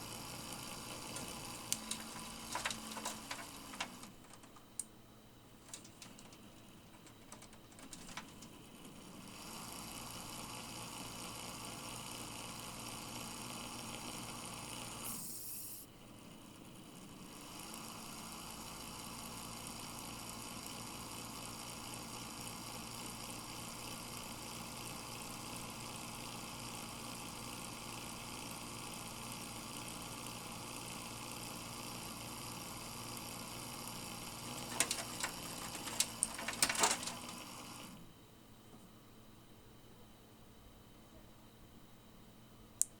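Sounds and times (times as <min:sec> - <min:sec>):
fan whirring with whining tones: 0:00.0 - 0:11.6, 0:33.8 - 0:39.2
sharp clicks: 0:00.9 - 0:04.9, 0:05.7 - 0:08.6, 0:34.5 - 0:37.4.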